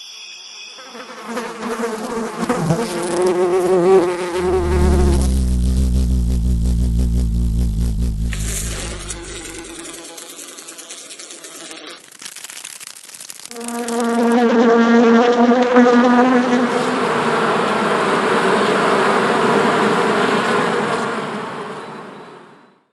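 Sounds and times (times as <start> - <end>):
insect wings buzzing: 0.7 - 15.6.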